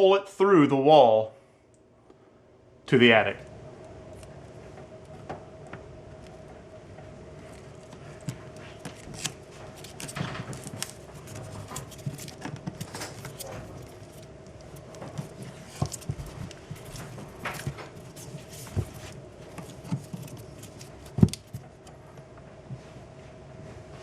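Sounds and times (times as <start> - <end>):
tape wrapping around cable: 5.8 - 22.0.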